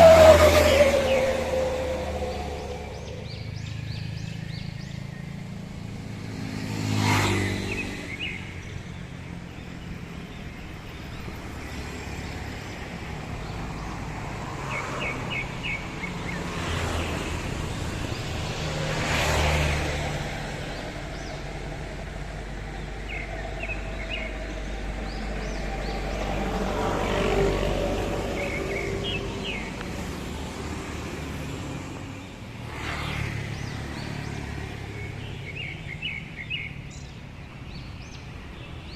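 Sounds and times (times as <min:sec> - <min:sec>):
high bird chirps: 0:00.0 - 0:04.2
traffic rumble: 0:00.0 - 0:38.9
vehicles passing by: 0:00.0 - 0:38.9.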